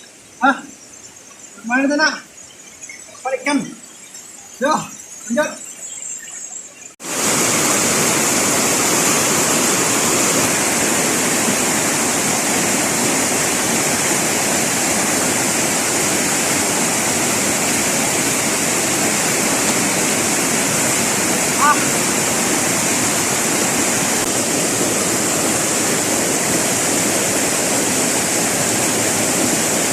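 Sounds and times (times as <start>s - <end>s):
river water rushing: 6.5s - 29.9s.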